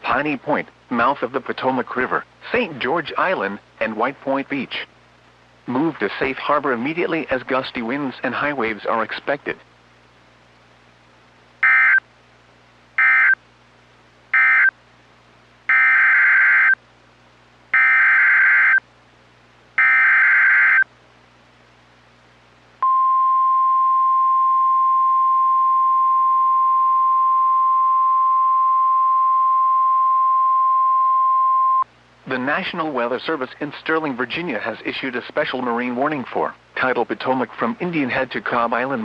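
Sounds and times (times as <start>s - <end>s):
steady single-pitch alarm tone: 11.6s - 12.0s, 13.0s - 13.4s, 14.3s - 14.7s, 15.7s - 16.8s, 17.8s - 18.8s, 19.8s - 20.8s.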